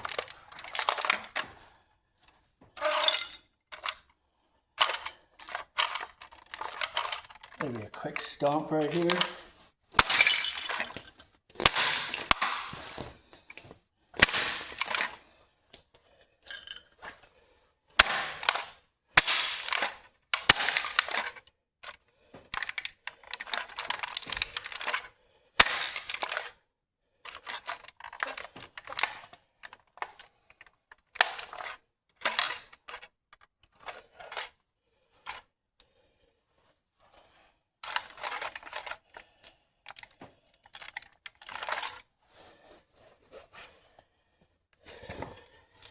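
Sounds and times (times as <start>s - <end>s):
toy car cracking and crunching: 0.0s - 1.7s, 4.8s - 15.3s, 18.0s - 26.6s, 27.3s - 30.3s, 31.0s - 34.6s, 37.8s - 42.1s
plastic snapping: 11.6s - 15.2s, 18.0s - 21.4s, 25.6s - 26.4s.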